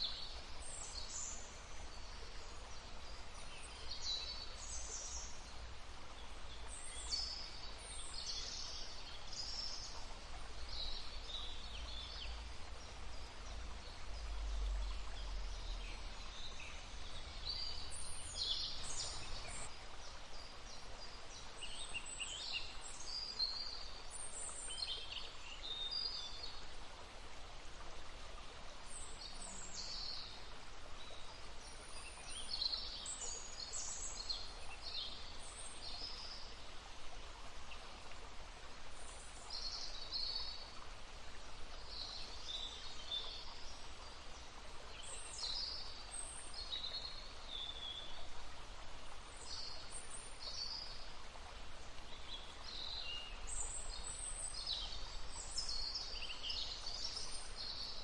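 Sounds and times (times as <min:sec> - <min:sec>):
songbirds chirping and trilling: 0:00.0 - 0:26.6.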